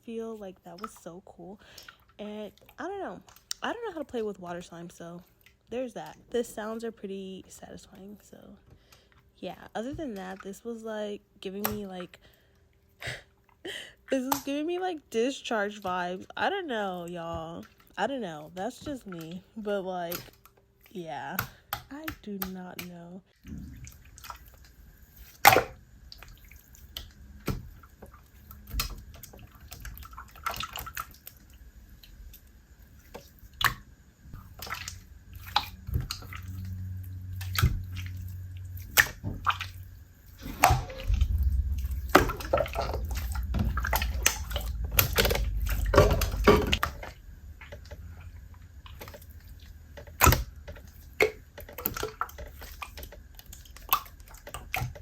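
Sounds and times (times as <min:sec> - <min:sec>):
slime squelching: 0:17.0 - 0:55.0.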